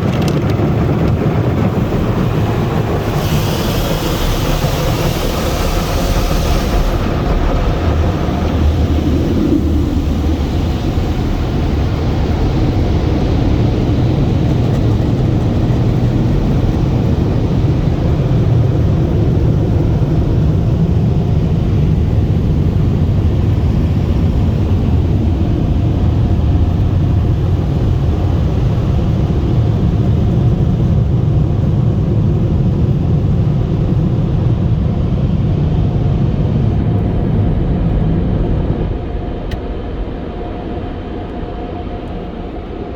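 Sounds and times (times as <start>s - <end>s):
car wash dryer blowers: 0.0s - 42.9s.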